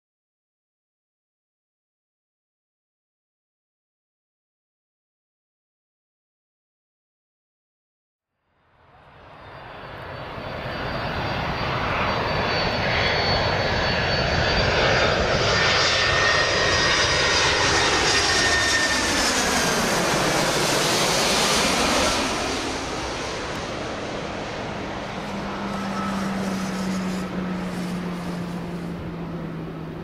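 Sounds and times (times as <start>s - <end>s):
jet airliner passing: 8.8s - 30.0s.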